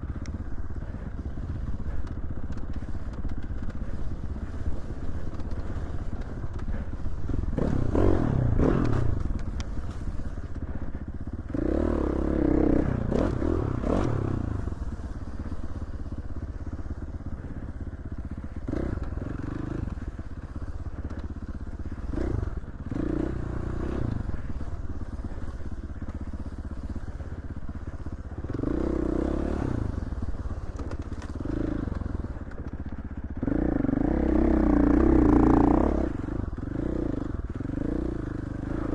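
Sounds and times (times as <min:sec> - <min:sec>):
dirt bike engine revving: 0:00.6 - 0:38.9
bike clattering over rough ground: 0:08.8 - 0:11.4, 0:30.0 - 0:33.4.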